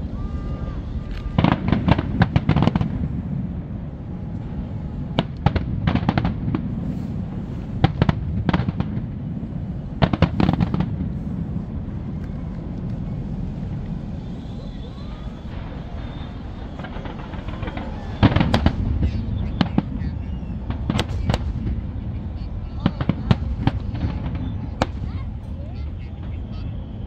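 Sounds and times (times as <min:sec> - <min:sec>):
fireworks crackling bangs: 0:00.0 - 0:27.0
steady low rumble: 0:00.0 - 0:27.0.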